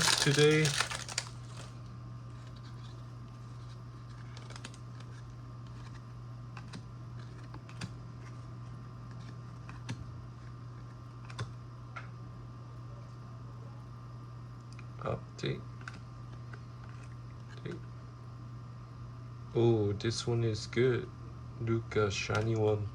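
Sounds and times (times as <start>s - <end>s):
steady low hum: 0.0s - 22.9s.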